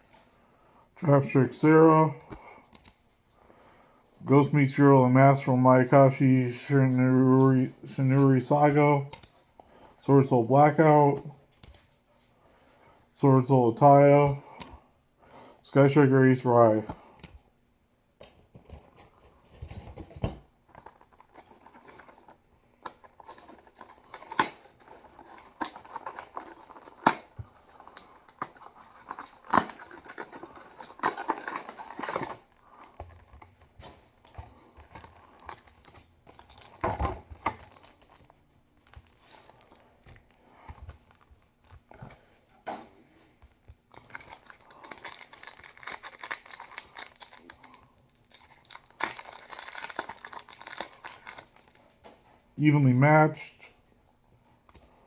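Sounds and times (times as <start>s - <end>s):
wrappers and cards rustling: 4.3s - 14.8s, 18.2s - 53.2s
foil packs tearing and crinkling: 23.2s - 32.5s, 35.0s - 40.3s, 44.0s - 51.8s.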